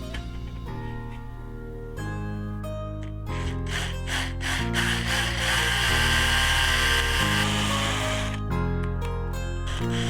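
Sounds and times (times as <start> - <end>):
background music with held notes: 0.0 - 10.0
rhythmic rasping: 3.3 - 8.6, 9.6 - 10.0.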